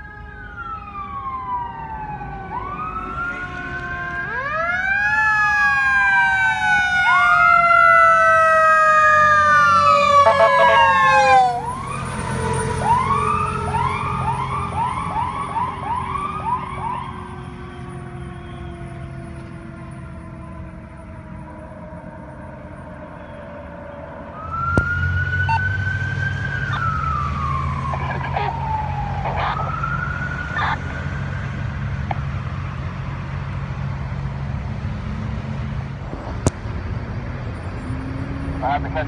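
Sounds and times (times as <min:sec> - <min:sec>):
ambulance siren wailing: 0:00.0 - 0:33.3, 0:38.0 - 0:39.0.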